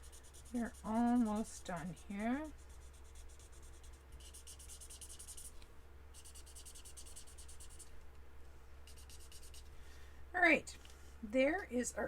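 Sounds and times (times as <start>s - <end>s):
marker scribbling on cardstock: 0.0s - 5.5s, 6.2s - 7.8s, 8.9s - 9.7s.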